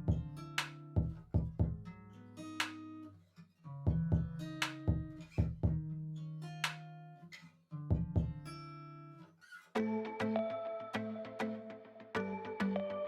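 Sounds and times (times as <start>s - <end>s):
instrumental music: 9.8s - 13.0s
plucked guitar notes: 9.8s - 13.0s.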